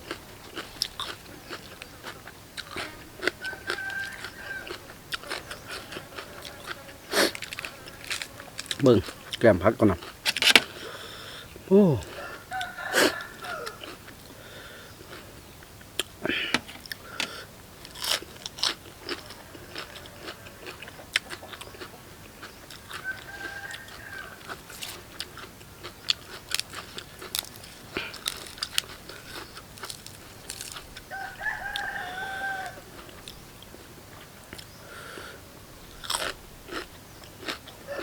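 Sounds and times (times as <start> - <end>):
crunching raw vegetables: 0.0 - 11.0, 11.7 - 34.8, 35.9 - 38.0
rooster crowing: 3.2 - 6.8, 11.8 - 14.0, 19.0 - 20.9, 22.9 - 24.6, 30.6 - 33.1, 37.8 - 38.0.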